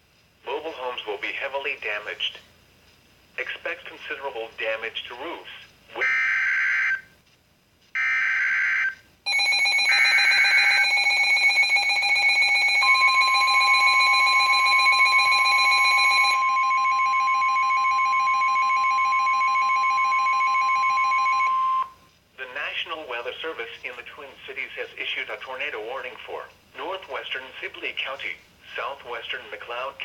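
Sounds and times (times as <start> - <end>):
pulsing electronic alarm: 6.0 - 7.1, 8.0 - 22.0
steady warning alarm tone: 6.0 - 7.1, 8.0 - 22.0.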